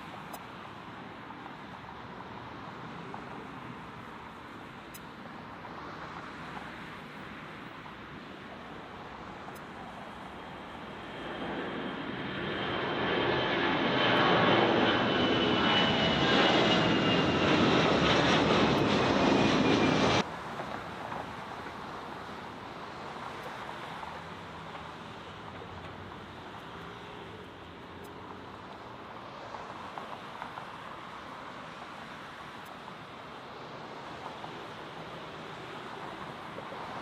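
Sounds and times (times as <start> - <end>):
jet engines whining: 10.1 - 20.3.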